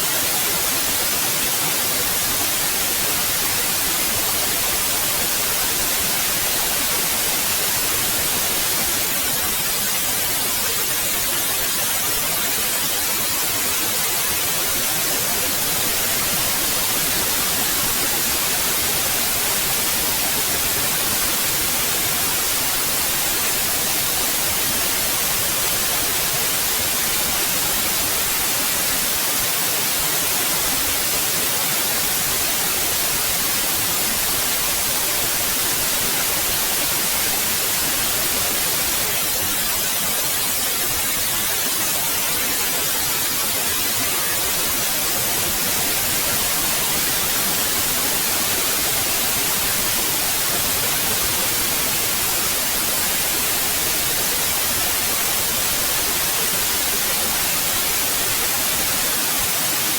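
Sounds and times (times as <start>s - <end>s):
steady white noise hiss: 0.0s - 59.9s.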